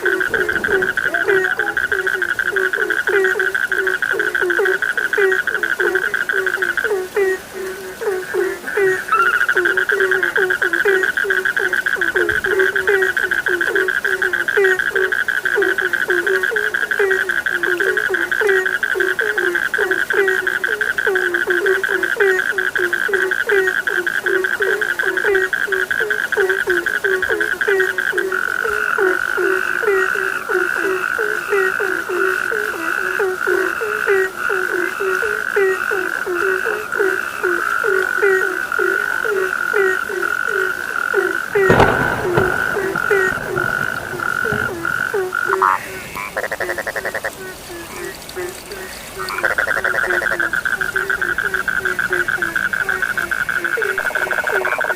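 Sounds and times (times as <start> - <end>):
frogs croaking: 0.0 - 54.9
frogs trilling: 0.0 - 54.9
short frog chirps: 8.8 - 14.2, 41.2 - 52.4.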